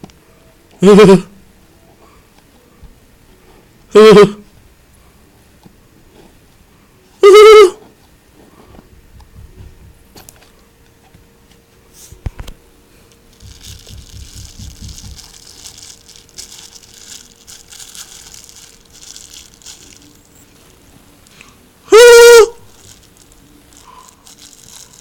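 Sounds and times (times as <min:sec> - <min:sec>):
plastic packaging crinkling: 0:13.2 - 0:21.2, 0:22.6 - 0:25.0.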